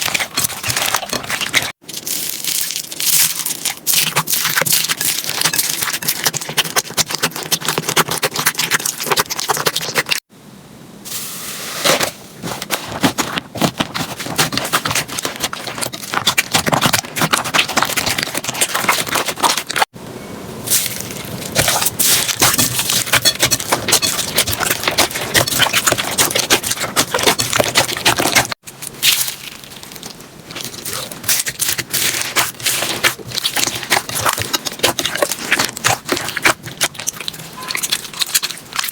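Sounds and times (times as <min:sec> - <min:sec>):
slime crackling and popping: 0:00.0 - 0:10.2, 0:20.7 - 0:38.9.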